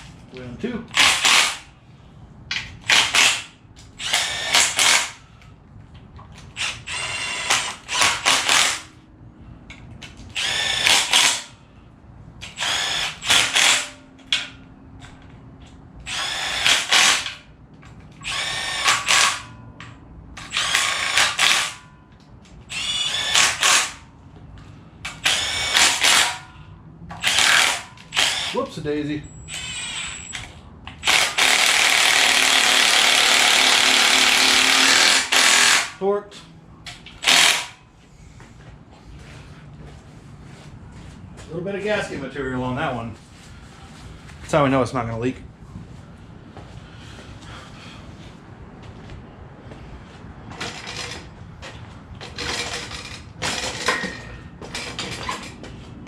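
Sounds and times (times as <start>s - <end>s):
power driver whining: 2.5s - 5.5s, 10.0s - 11.6s, 16.0s - 24.1s, 25.0s - 36.1s.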